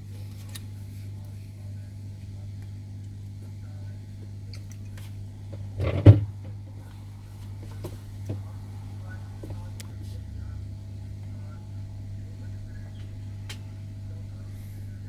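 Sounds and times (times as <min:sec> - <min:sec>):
steady low hum: 0:00.0 - 0:15.0
dull knock: 0:05.8 - 0:06.5.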